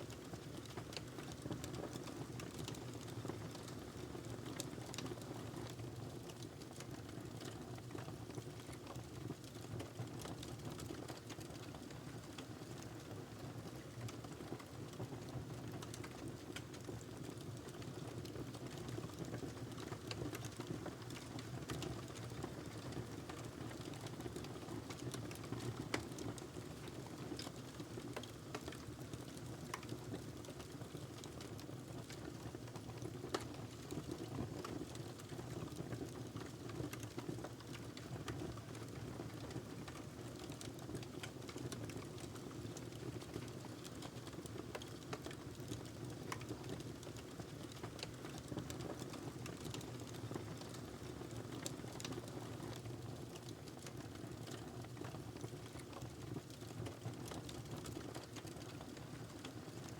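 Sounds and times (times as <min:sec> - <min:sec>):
fire crackling and popping: 0:15.0 - 0:59.9.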